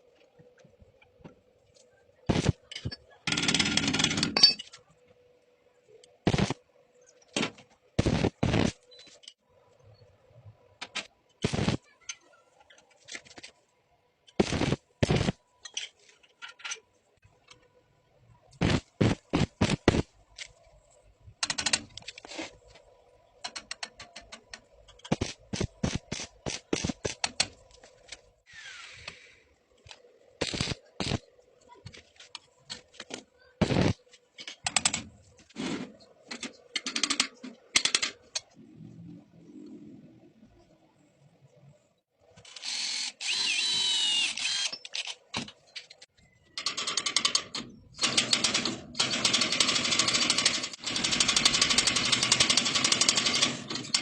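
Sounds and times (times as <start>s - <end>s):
metalworking clicks and knocks: 21.4s - 22.3s, 23.3s - 28.3s, 34.3s - 35.2s, 36.2s - 38.5s, 44.7s - 49.5s.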